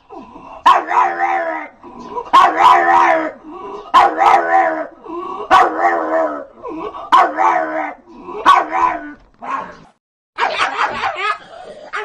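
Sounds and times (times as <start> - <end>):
dog yapping: 0.6 - 4.7, 7.1 - 12.0
dog barking with howl-like cries: 0.6 - 6.5, 7.1 - 9.8, 10.4 - 12.0.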